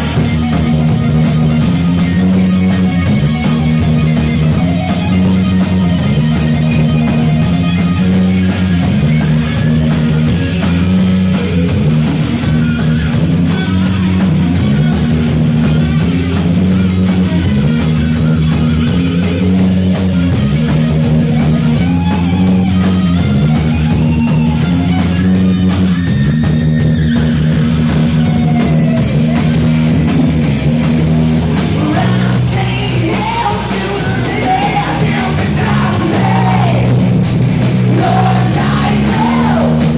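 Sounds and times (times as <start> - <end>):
loud distorted rock music: 0.0 - 39.9
person singing: 31.8 - 37.0, 37.9 - 39.9.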